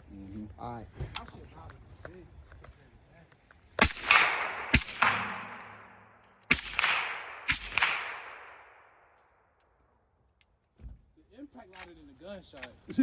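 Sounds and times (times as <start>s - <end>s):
suppressed rifle shots: 3.8s - 9.2s
bullet impact crack with ringing: 3.8s - 9.7s.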